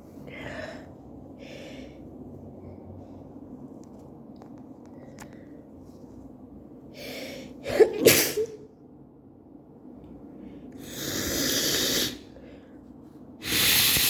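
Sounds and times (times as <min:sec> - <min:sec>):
long noisy breath: 0:00.2 - 0:02.8, 0:10.3 - 0:14.0
woman sneezing: 0:07.7 - 0:08.6.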